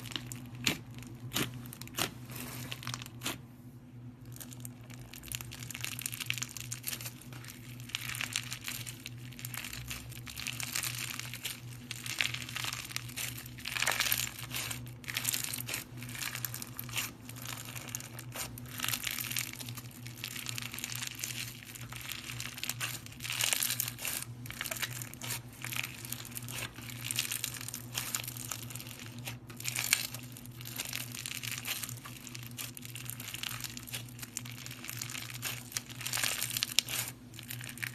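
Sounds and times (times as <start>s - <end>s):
slime crackling and popping: 0.0s - 3.4s, 4.1s - 37.9s
steady low hum: 0.0s - 37.9s.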